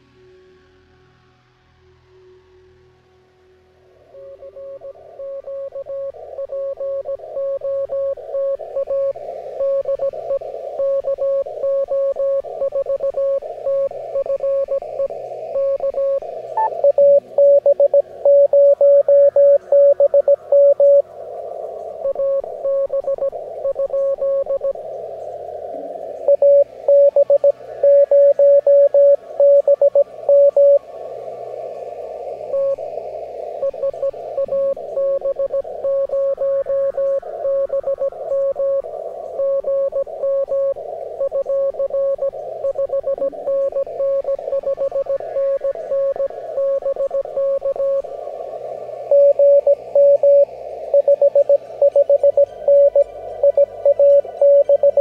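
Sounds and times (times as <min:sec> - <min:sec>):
soft background music: 0:00.0 - 0:05.6
radio band hiss: 0:04.0 - 0:55.0
fainter higher morse beeps: 0:04.2 - 0:21.0, 0:21.9 - 0:24.9, 0:26.2 - 0:30.8, 0:32.4 - 0:33.0, 0:33.6 - 0:48.1, 0:49.0 - 0:55.0
morse code beeping tone: 0:04.2 - 0:21.0, 0:22.0 - 0:24.8, 0:26.2 - 0:30.8, 0:33.6 - 0:38.8, 0:39.4 - 0:48.0, 0:49.1 - 0:55.0.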